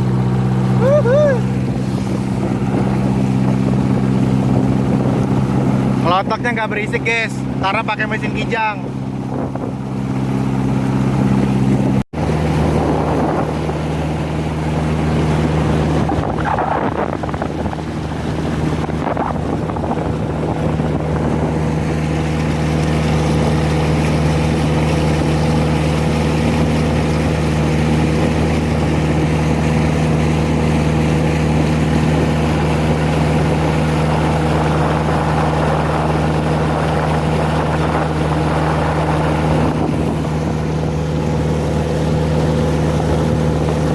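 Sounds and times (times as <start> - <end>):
boat engine running: 0.0 - 43.9
water rushing past: 0.0 - 43.9
wind rushing: 1.2 - 6.0, 8.9 - 23.8, 33.3 - 43.9.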